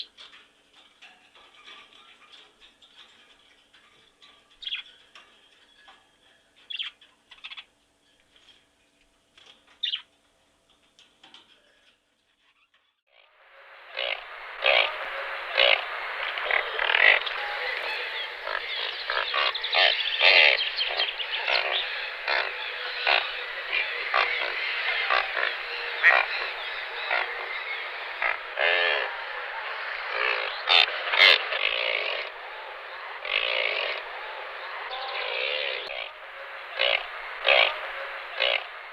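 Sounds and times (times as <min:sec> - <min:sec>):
frogs croaking: 0:13.1 - 0:38.9
steady background din: 0:13.5 - 0:38.9.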